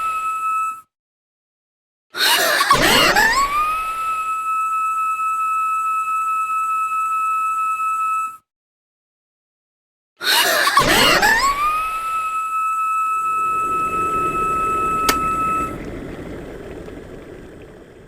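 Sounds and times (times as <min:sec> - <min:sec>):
kettle whistling: 0:11.6 - 0:18.0.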